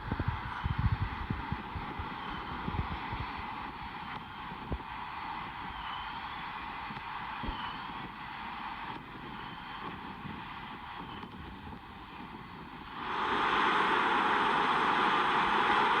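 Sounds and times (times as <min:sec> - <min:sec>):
combine harvester running: 0:13.0 - 0:16.0.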